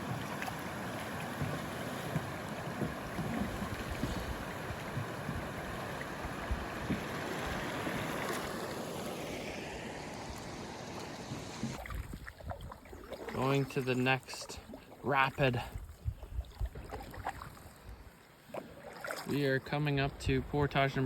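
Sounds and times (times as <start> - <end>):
river water flowing: 0.0 - 15.9, 16.5 - 19.6
wind noise on microphone: 3.1 - 7.8, 11.7 - 12.8, 15.8 - 17.0.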